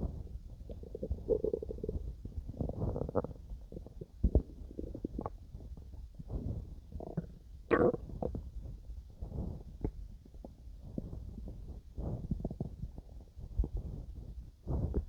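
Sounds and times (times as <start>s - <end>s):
stomach growling and gurgling: 0.0s - 15.0s.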